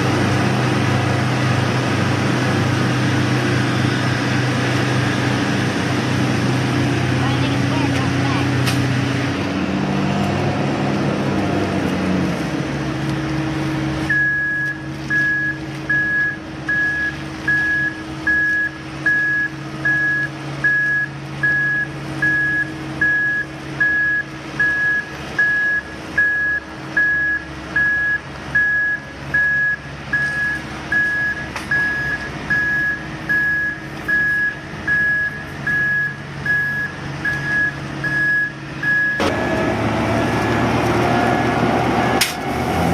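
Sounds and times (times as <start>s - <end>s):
diesel engine running: 0.0s - 42.9s
reversing alarm beeps: 14.1s - 39.3s.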